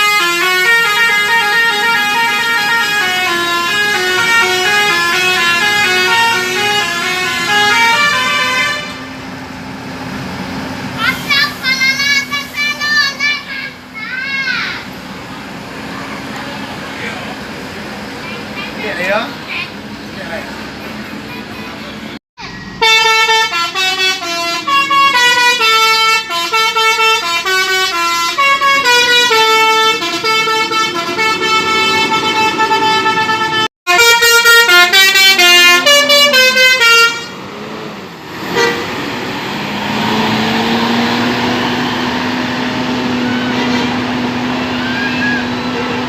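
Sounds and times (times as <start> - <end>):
bus musical horn melody: 0.0 - 9.3, 21.2 - 37.6, 38.4 - 39.2, 40.1 - 46.0
bus engine running: 0.0 - 46.0.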